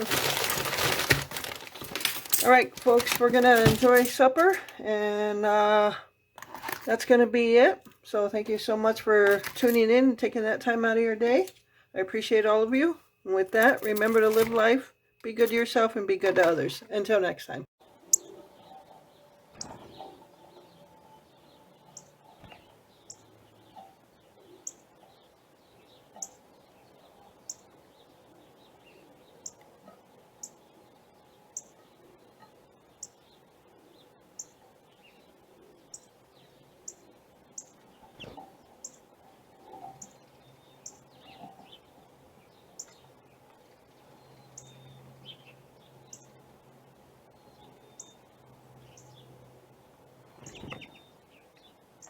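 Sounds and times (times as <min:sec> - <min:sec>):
small birds chirping: 0:00.0 - 0:52.0.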